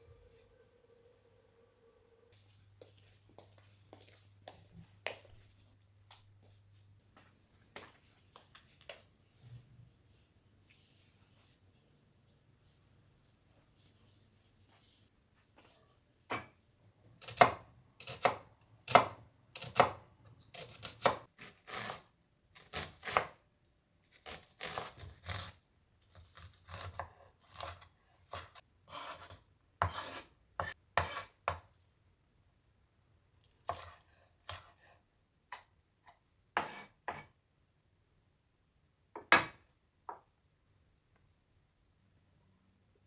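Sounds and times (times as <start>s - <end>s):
knife chopping on cutting board: 17.2s - 20.0s, 20.6s - 22.0s, 26.4s - 31.6s, 36.6s - 37.3s.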